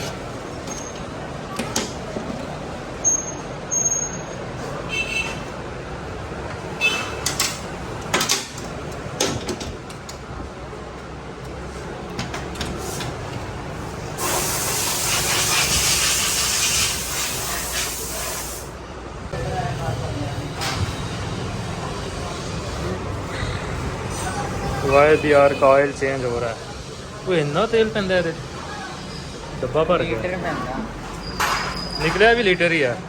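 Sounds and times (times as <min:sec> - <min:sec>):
hissing jet of spray: 0:14.2 - 0:18.8.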